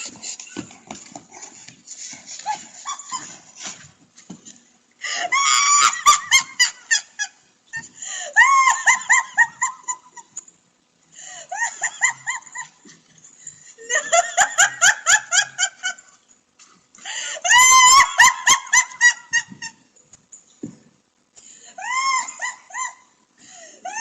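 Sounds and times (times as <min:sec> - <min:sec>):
woman laughing in shrieks: 0:02.4 - 0:03.4, 0:05.0 - 0:10.2, 0:11.3 - 0:12.8, 0:17.2 - 0:19.9, 0:21.8 - 0:23.2, 0:23.8 - 0:24.0.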